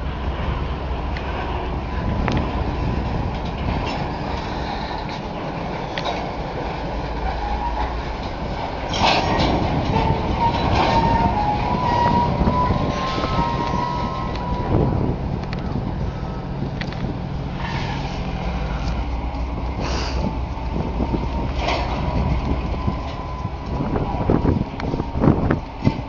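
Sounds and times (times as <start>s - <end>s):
freight cars rumbling: 0.0s - 26.0s
wheels clicking over rail joints: 0.2s - 26.0s
thin wheel squeal: 8.9s - 14.8s.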